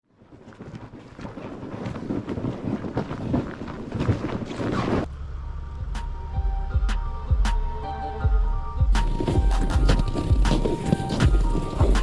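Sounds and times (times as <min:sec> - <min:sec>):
wind buffeting microphone: 0:00.2 - 0:05.1, 0:08.8 - 0:12.0.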